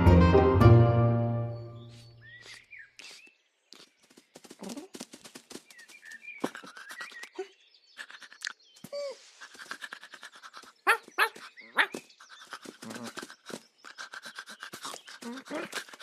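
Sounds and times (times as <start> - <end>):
music: 0.0 - 1.9.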